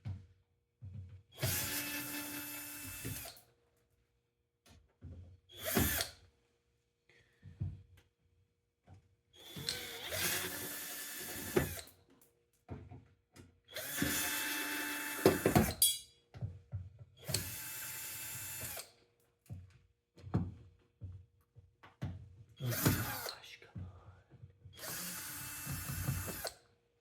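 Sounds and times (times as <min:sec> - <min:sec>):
electric drill-driver running: 0:01.4 - 0:03.4, 0:05.6 - 0:06.1, 0:09.4 - 0:11.9, 0:13.7 - 0:15.7, 0:17.2 - 0:18.8, 0:22.6 - 0:23.3, 0:24.8 - 0:26.5.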